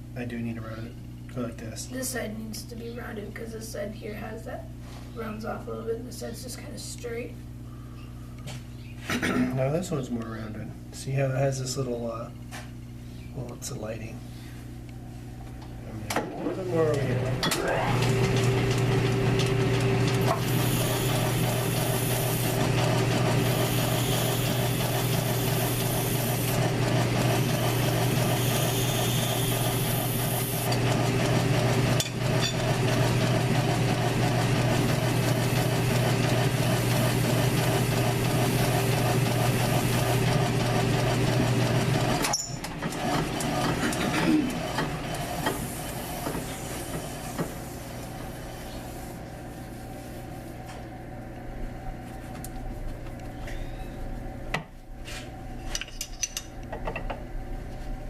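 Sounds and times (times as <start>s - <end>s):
lathe running: 16.2s - 49.2s
hissing of cutting: 20.3s - 30.9s, 34.8s - 40.3s.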